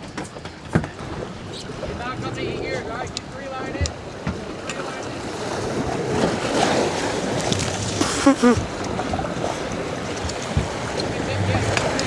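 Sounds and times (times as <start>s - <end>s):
wind and waves rushing: 1.3s - 12.0s.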